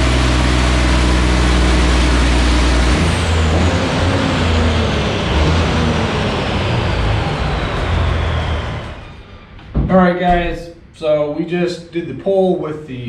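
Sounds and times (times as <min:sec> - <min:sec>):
heavy diesel engine: 0:00.0 - 0:09.7.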